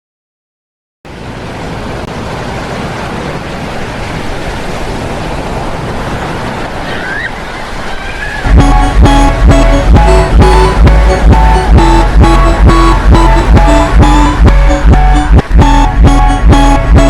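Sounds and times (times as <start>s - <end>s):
ocean waves and surf: 1.1s - 17.0s
alarm tune with beat: 8.4s - 17.0s.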